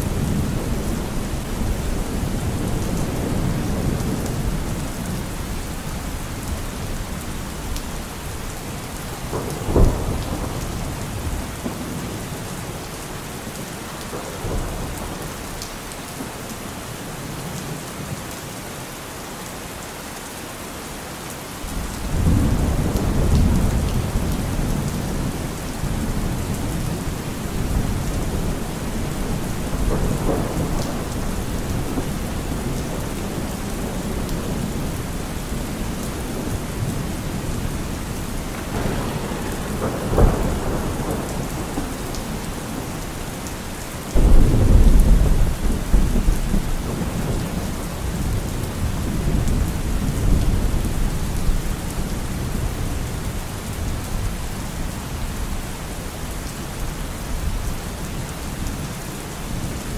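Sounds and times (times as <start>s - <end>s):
low rumble of thunder: 0.0s - 15.9s, 21.7s - 58.8s
steady rain: 0.0s - 59.9s
thunder crack: 22.0s - 43.5s, 44.2s - 50.6s.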